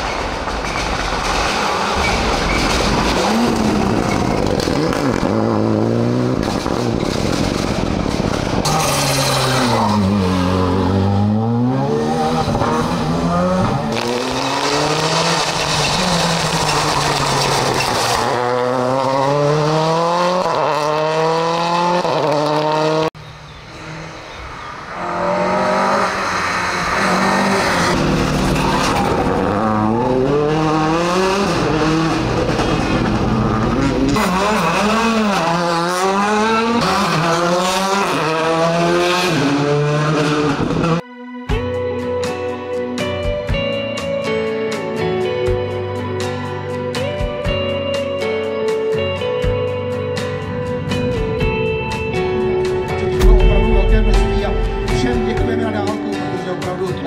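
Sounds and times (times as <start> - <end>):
rally car engines at full throttle: 0.0 - 41.0
car approaching through the gears: 0.1 - 41.0.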